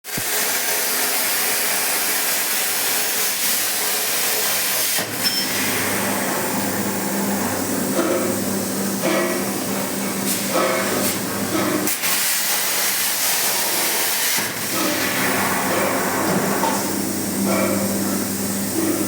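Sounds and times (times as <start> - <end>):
plasma torch hissing: 11.8 - 17.2.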